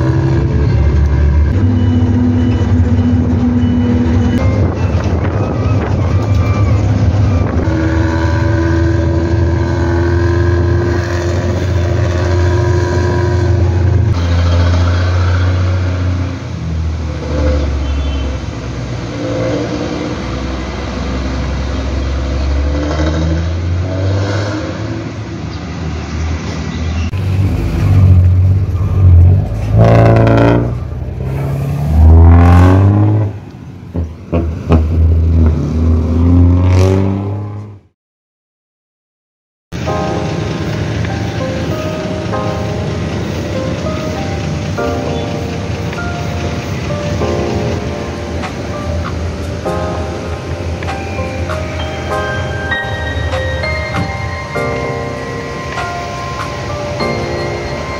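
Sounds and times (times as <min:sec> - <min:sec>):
diesel bus engine revving: 0:00.0 - 0:25.4, 0:27.1 - 0:37.8.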